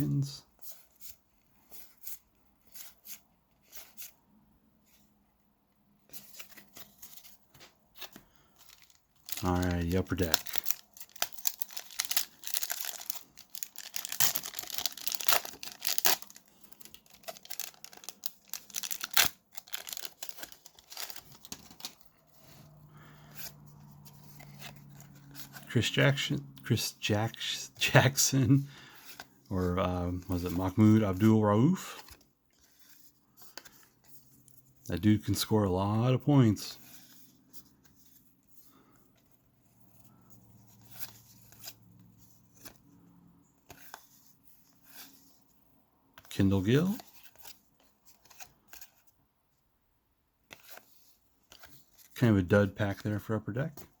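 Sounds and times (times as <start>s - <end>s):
rustling of cards: 0.0s - 5.1s, 6.0s - 49.2s, 50.4s - 54.0s
card pack wrapper tearing: 8.1s - 22.0s
trading cards flipped: 47.2s - 49.0s.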